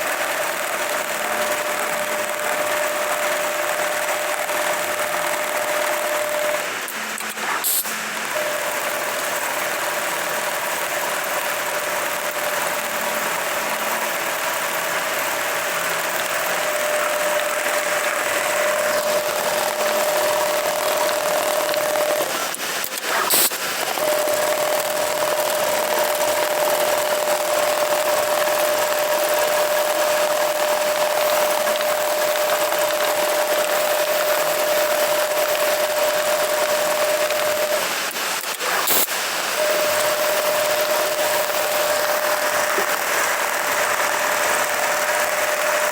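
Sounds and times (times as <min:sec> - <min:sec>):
sewing machine running: 0:00.0 - 0:45.9.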